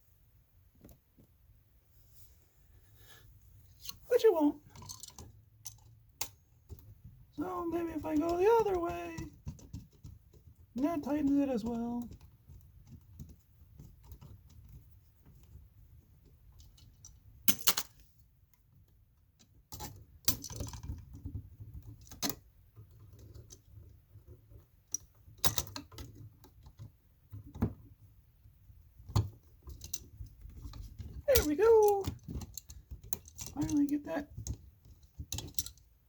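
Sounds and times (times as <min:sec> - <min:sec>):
metal tools clicking and scraping: 0:31.3 - 0:34.0, 0:35.3 - 0:35.8.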